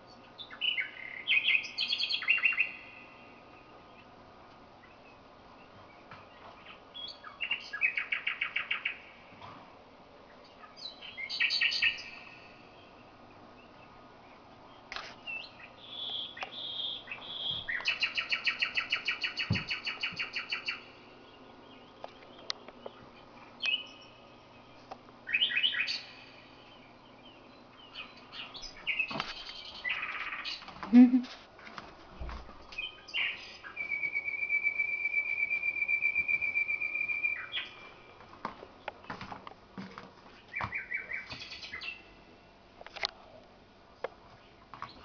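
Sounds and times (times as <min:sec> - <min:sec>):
nightingale singing: 0:00.0 - 0:04.2, 0:04.8 - 0:09.3, 0:10.3 - 0:30.7, 0:32.6 - 0:38.2, 0:40.3 - 0:42.6
piping whistles: 0:33.1 - 0:37.8.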